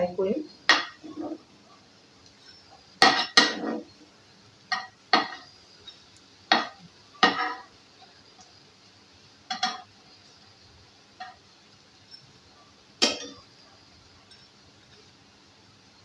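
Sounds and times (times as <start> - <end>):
utensil scraping a frying pan: 2.3 - 4.0.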